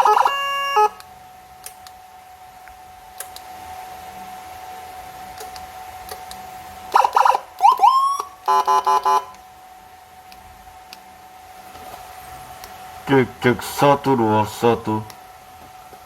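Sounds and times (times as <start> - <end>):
fast-chopped siren tones: 0.0 - 1.0, 6.9 - 9.3
two-tone police siren: 0.0 - 1.1, 6.9 - 9.4.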